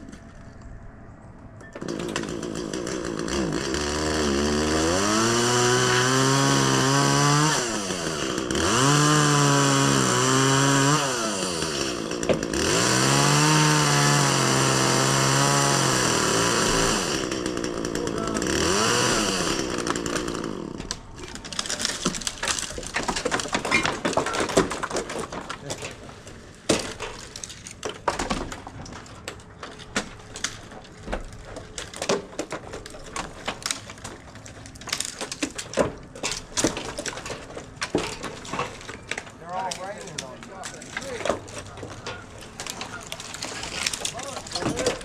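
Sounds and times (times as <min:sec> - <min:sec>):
chainsaw cutting tree trunk: 0:01.8 - 0:23.6
crackling: 0:19.6 - 0:45.0.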